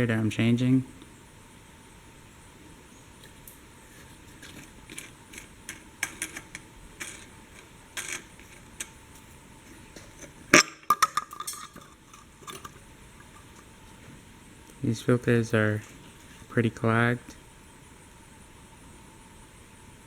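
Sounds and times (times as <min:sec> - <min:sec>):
brief rattle: 0:03.2 - 0:13.7
small hard parts clicking: 0:03.2 - 0:13.7
sharp clack: 0:10.0 - 0:13.6.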